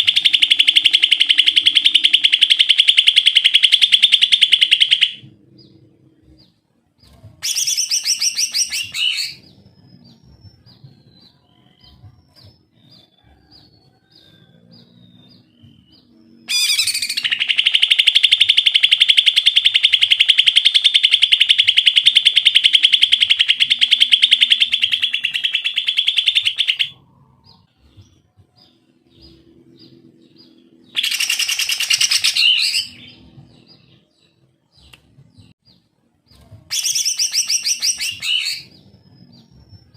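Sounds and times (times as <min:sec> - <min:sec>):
bird singing: 0:00.0 - 0:39.9.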